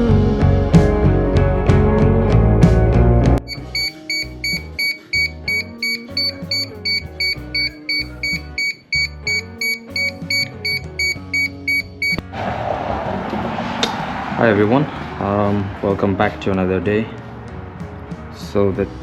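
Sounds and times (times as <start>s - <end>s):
background music with steady beat: 0.0s - 12.3s
stepping bass notes: 0.0s - 12.3s.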